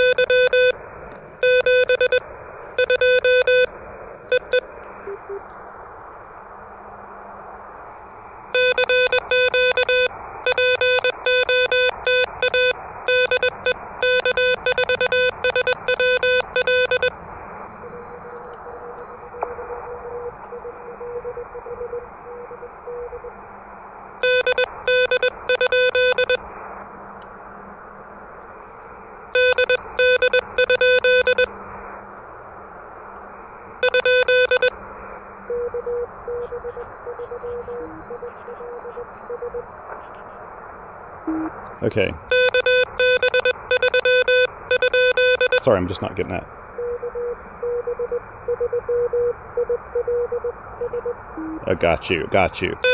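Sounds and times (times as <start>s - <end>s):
faint incoming morse signal: 0.0s - 0.8s, 1.4s - 2.2s, 2.8s - 3.7s, 4.3s - 5.4s, 8.5s - 23.3s, 24.2s - 26.4s, 29.4s - 31.5s, 33.8s - 34.7s, 41.3s - 41.5s, 42.3s - 45.8s, 52.6s - 52.9s
morse code tone: 0.0s - 0.8s, 1.4s - 2.2s, 2.8s - 3.7s, 4.3s - 5.4s, 8.6s - 23.3s, 24.2s - 26.4s, 29.4s - 31.5s, 33.8s - 34.8s, 35.5s - 39.7s, 41.3s - 41.6s, 42.3s - 45.7s, 46.8s - 51.8s.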